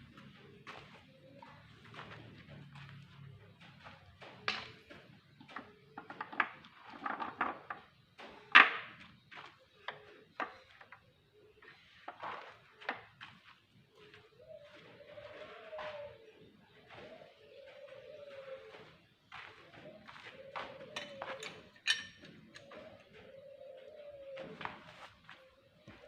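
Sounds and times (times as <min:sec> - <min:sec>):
hard objects knocking and clattering: 0:05.5 - 0:07.9, 0:20.9 - 0:22.7.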